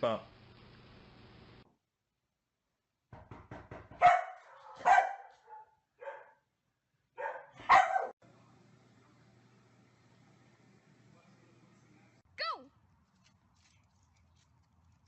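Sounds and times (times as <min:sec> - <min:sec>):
dog barking: 0:04.0 - 0:06.4, 0:07.2 - 0:08.2.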